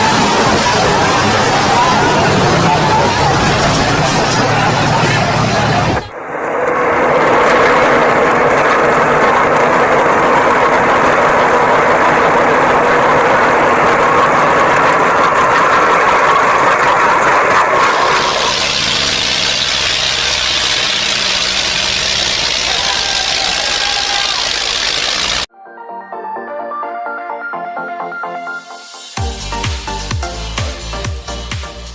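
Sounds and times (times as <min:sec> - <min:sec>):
tractor engine running: 0:06.8 - 0:25.5.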